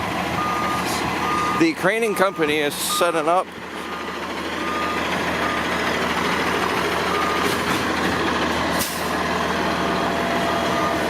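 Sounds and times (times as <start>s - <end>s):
diesel engine running: 0.0s - 11.0s
reversing alarm beeping: 0.4s - 6.4s, 7.0s - 7.6s, 10.3s - 11.0s.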